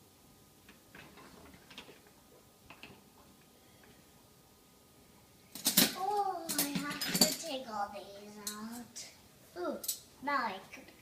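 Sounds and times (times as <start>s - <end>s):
dishes clattering: 5.6s - 7.4s
dishes clinking: 5.6s - 7.4s.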